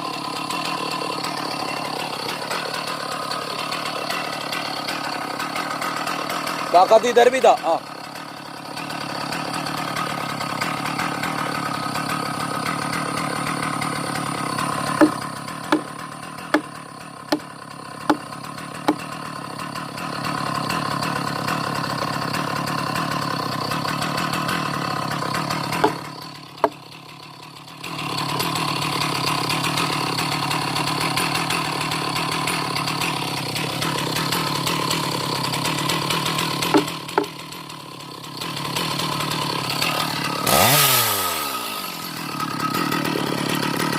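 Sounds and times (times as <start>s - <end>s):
chainsaw engine running: 0.0s - 43.9s
sharp knocks: 15.0s - 15.9s, 25.8s - 26.0s, 36.7s - 37.3s.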